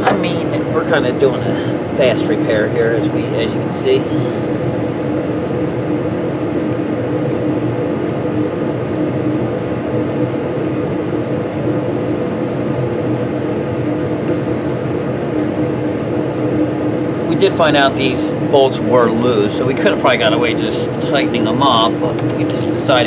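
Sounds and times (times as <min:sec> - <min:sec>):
mechanical hum: 0:00.0 - 0:23.0.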